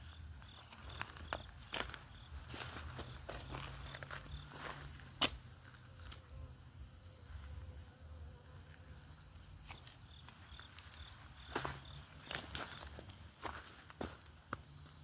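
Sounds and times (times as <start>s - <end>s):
high-pitched insect trill: 0.0s - 15.0s
footsteps: 0.4s - 6.3s, 9.6s - 14.7s.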